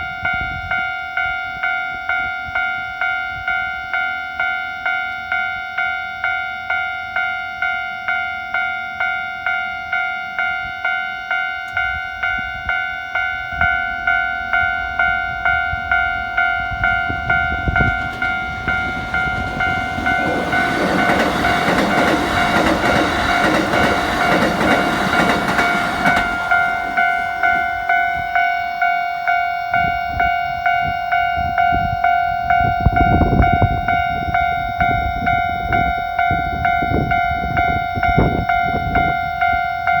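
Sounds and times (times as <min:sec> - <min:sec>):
train wheel and motor noise: 0:15.3 - 0:28.4.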